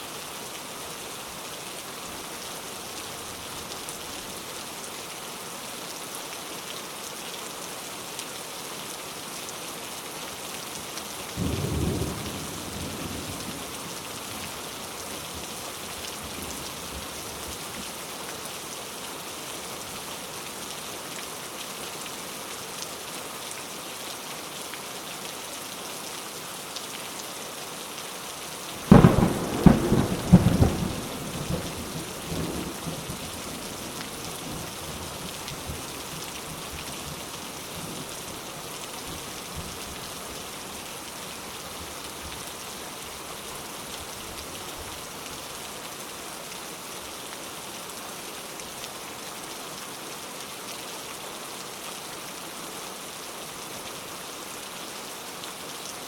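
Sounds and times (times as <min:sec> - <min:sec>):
rain falling: 0:00.0 - 0:56.0
thunder rumbling: 0:28.9 - 0:32.5.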